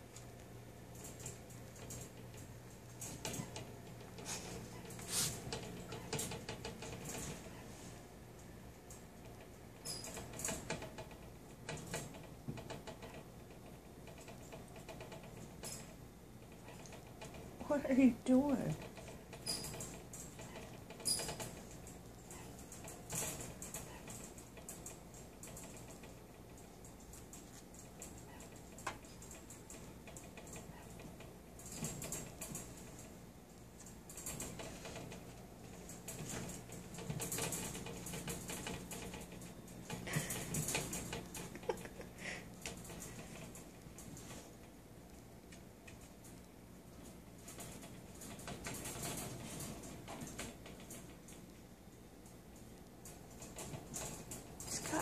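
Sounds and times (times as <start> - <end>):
animal taps and scratches: 0.0 - 7.7, 8.4 - 17.8, 18.6 - 42.0, 42.6 - 55.0.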